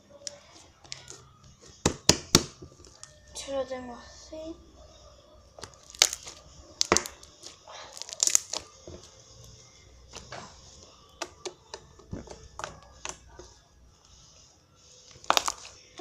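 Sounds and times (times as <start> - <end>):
sticky slime clicks and snaps: 5.6 - 8.8, 15.1 - 15.8.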